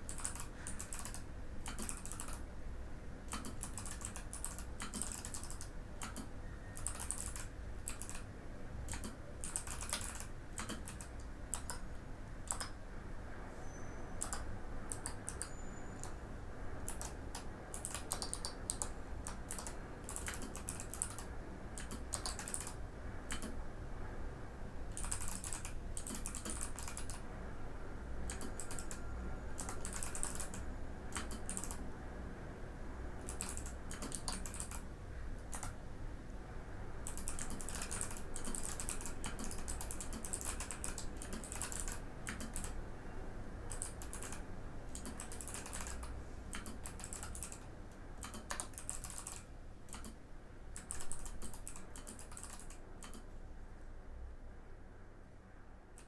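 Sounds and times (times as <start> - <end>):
mechanical keyboard keys clacking: 0.0 - 2.4, 3.3 - 8.3, 8.9 - 11.8, 12.5 - 12.8, 14.2 - 16.1, 16.9 - 23.6, 24.9 - 27.2, 28.3 - 29.0, 29.6 - 31.8, 33.2 - 34.8, 37.0 - 42.8, 43.7 - 50.2, 50.8 - 53.2.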